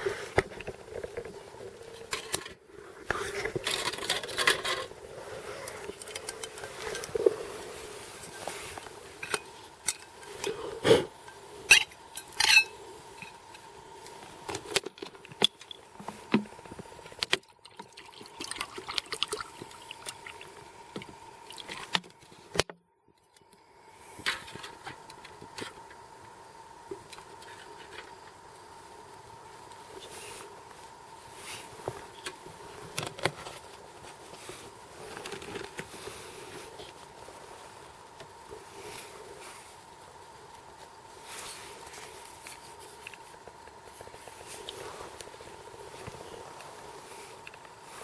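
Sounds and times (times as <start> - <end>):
faint steady hum: 0.0 - 48.0
metal cookware clinking: 11.7 - 12.8.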